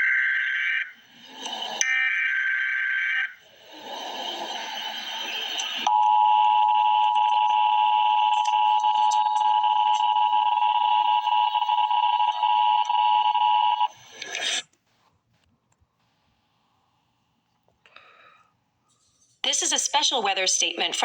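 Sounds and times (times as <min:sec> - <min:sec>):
two-tone alert alarm: 0:00.0 - 0:13.9.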